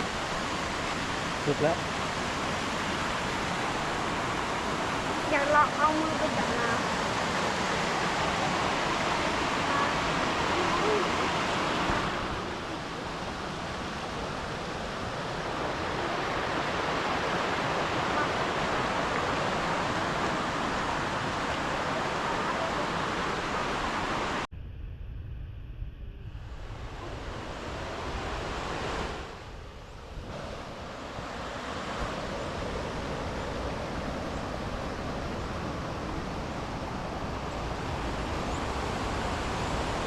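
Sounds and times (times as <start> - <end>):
waterfall rushing: 0.0 - 24.5.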